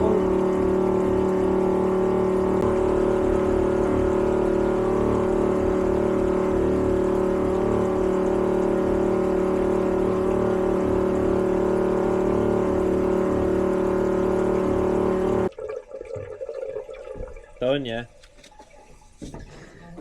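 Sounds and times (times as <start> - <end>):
farm machine engine running: 0.0 - 15.5.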